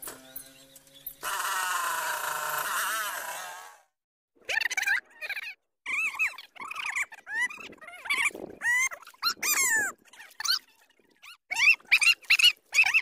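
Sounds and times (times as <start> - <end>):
animal high pitched cries: 4.4 - 13.0.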